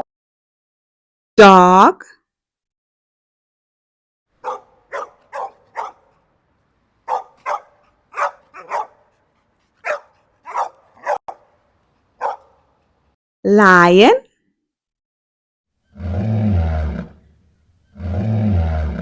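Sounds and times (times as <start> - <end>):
dog barking: 4.4 - 6.2, 7.0 - 9.2, 9.8 - 11.6, 12.2 - 12.7.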